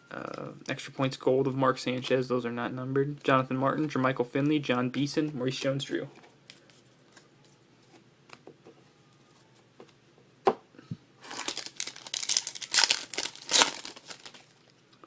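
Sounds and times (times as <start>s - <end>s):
foil wrapper tearing and crinkling: 11.2s - 14.7s.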